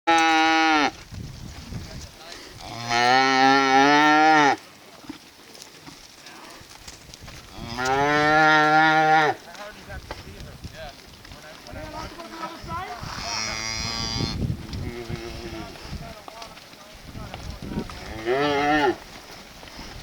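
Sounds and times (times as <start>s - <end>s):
cattle mooing: 0.1s - 0.9s, 2.6s - 4.6s, 7.5s - 9.4s, 13.0s - 15.8s, 17.9s - 19.0s.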